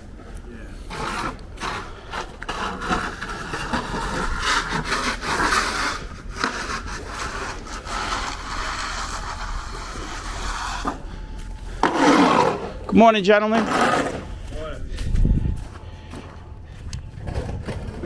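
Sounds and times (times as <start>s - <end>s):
snow shovels scraping pavement: 0.7s - 14.4s.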